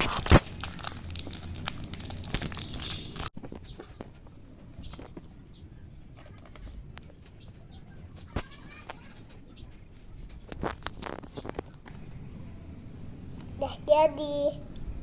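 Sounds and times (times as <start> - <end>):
plastic packaging crinkling: 0.0 - 3.3.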